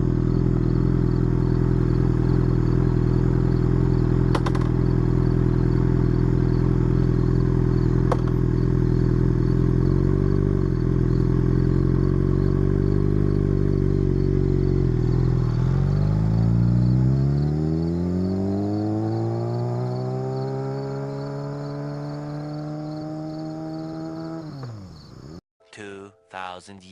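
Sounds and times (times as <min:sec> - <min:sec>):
motorcycle engine revving: 0:00.0 - 0:25.4.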